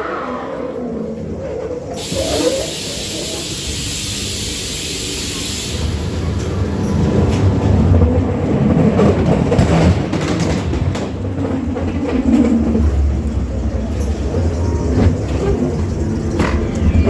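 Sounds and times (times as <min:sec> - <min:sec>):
ride train rumbling on track: 0:00.1 - 0:17.0.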